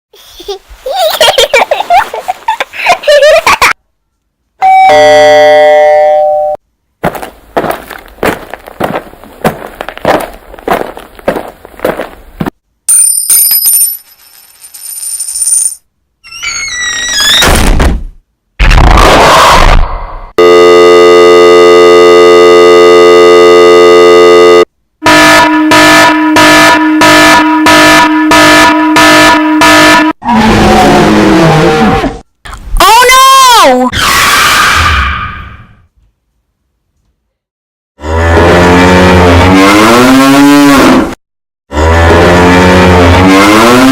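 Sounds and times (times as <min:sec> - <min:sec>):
loud ringing tone: 0:20.4 - 0:24.7
loud electronic buzzer: 0:20.4 - 0:30.2.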